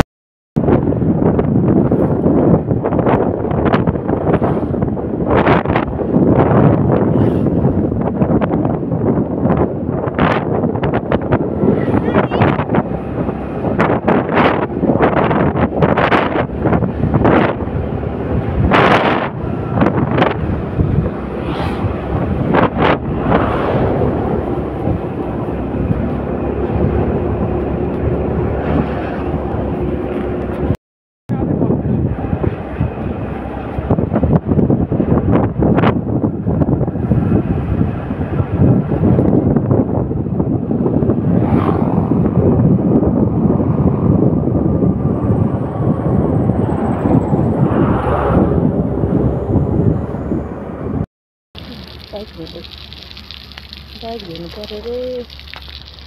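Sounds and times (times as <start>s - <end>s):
road noise from moving vehicle: 0.6s - 56.0s
wind rumble on microphone: 0.6s - 56.0s
brief whooshes: 21.4s - 22.0s.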